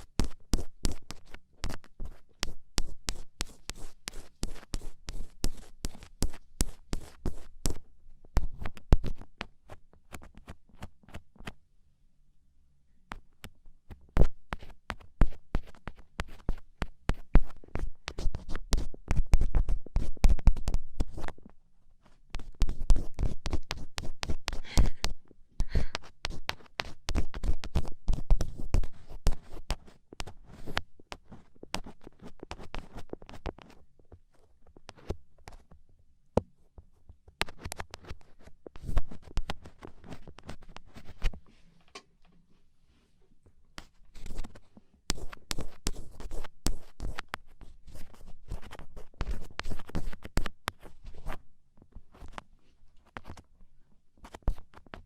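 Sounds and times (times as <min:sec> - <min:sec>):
ear pick scratching inside ear: 0:13.9 - 0:21.4, 0:37.4 - 0:41.4, 0:43.8 - 0:51.4, 0:54.2 - 0:55.0.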